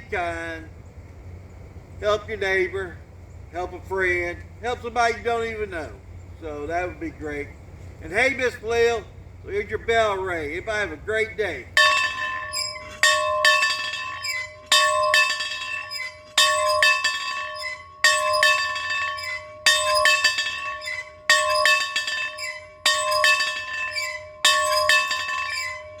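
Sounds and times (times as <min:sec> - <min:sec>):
bell ringing: 0:11.8 - 0:26.0
light clinks: 0:11.8 - 0:26.0.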